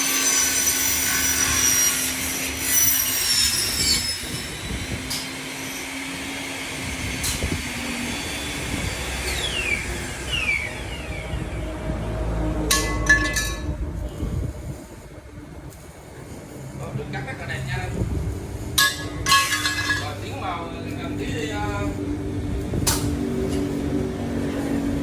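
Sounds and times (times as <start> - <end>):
saw cutting aluminium: 0.0 - 13.7
falling whines: 3.4 - 12.4
sharp metallic clank: 12.7 - 13.7, 18.7 - 20.2.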